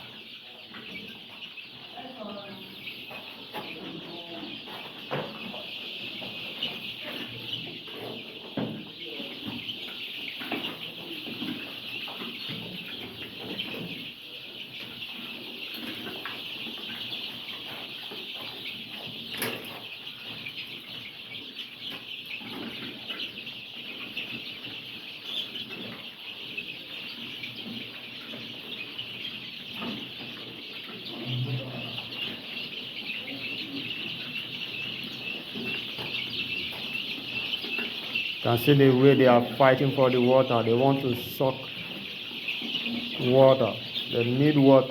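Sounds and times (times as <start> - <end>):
chickens chirping: 0.0 - 44.9.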